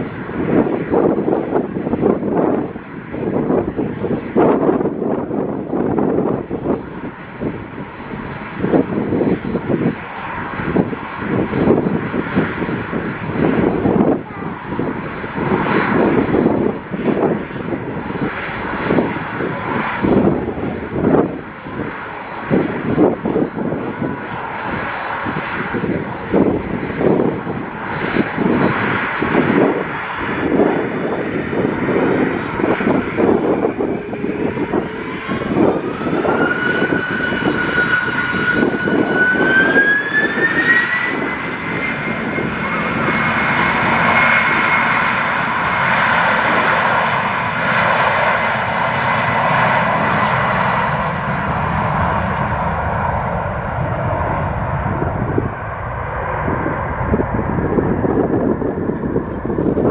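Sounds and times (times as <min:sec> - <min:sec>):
jet engines roaring: 0:00.0 - 0:59.9
rising engine whine: 0:00.0 - 0:59.9.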